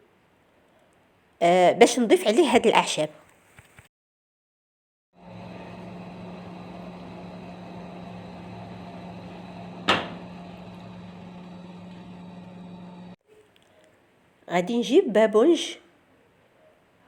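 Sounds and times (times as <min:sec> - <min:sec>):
mechanical hum: 0:05.2 - 0:13.2
sharp knock: 0:09.9 - 0:10.2.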